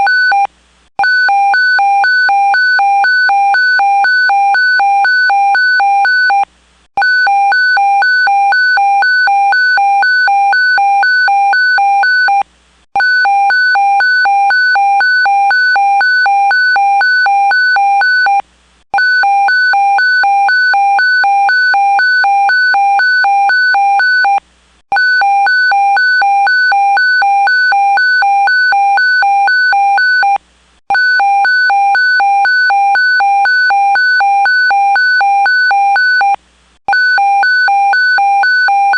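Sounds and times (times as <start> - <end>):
pulsing alarm beeps: 7.0 - 12.4, 13.0 - 18.4, 19.0 - 24.4, 25.0 - 38.9.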